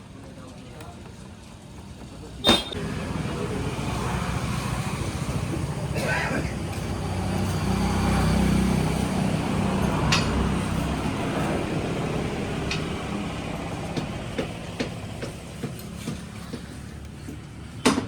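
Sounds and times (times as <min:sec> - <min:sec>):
motorcycle engine running: 0:02.8 - 0:16.8.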